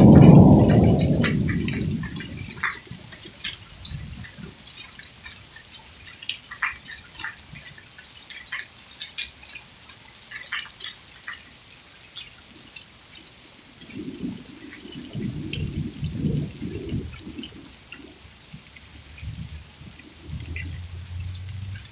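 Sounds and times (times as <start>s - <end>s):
thunder rumble: 0.0s - 4.6s, 13.7s - 21.9s
water drops ticking: 0.0s - 21.9s.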